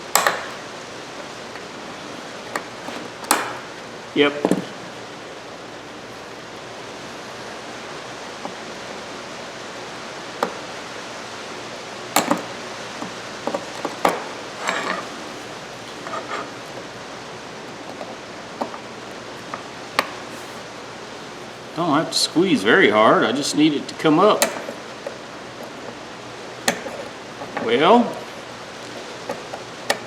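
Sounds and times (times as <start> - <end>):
pliers clicking on metal: 0.0 - 0.7, 24.4 - 25.2
steady hiss: 0.0 - 30.0.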